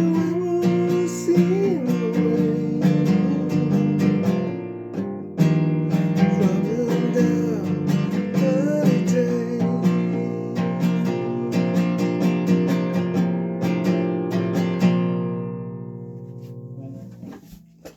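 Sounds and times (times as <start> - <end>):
acoustic guitar strumming: 0.0 - 17.9.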